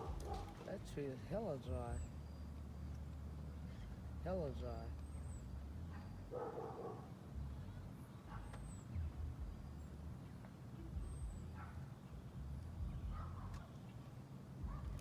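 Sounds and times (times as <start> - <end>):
bird chirps: 0.0 - 15.0
low rumble: 9.0 - 10.1, 12.2 - 13.5.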